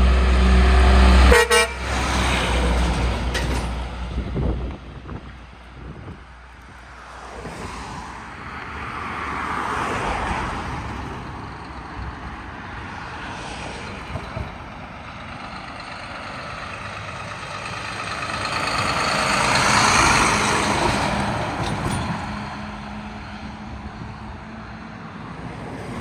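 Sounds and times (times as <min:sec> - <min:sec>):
truck passing: 0:00.0 - 0:26.0
vehicle passing: 0:06.9 - 0:21.6.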